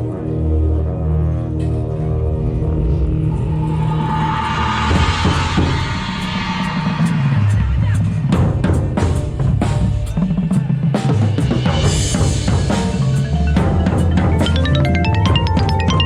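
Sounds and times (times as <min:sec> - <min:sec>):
mallet keyboards: 0:12.2 - 0:16.0
electronic music: 0:13.0 - 0:16.0.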